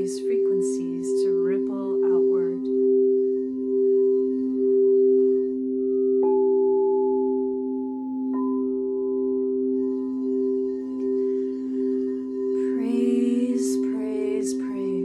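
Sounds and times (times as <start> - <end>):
singing bowls ringing: 0.0 - 15.0.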